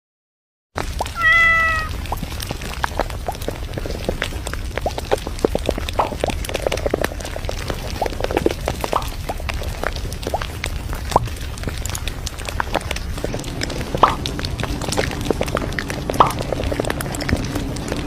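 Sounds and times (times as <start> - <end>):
cat meowing: 1.1 - 2.0.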